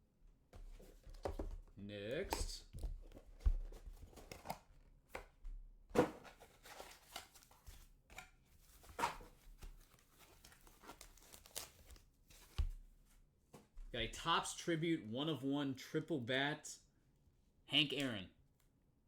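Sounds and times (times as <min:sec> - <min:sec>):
packaging rustling and crinkling: 0:06.2 - 0:12.8.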